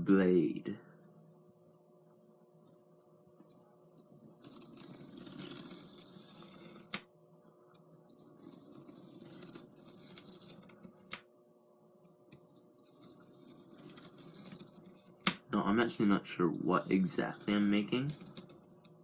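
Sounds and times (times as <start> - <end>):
knife cutting foam board: 3.9 - 7.1, 8.1 - 11.2, 12.3 - 15.4, 16.4 - 19.0.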